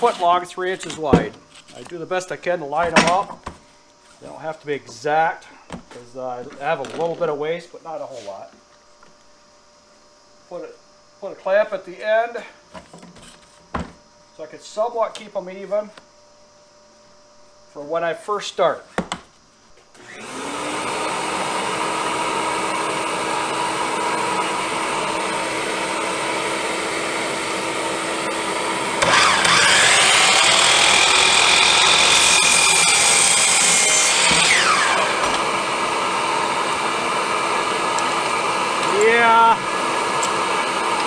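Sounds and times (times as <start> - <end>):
miter saw motor running: 20.0 - 41.0
saw blade cutting wood: 28.2 - 36.9.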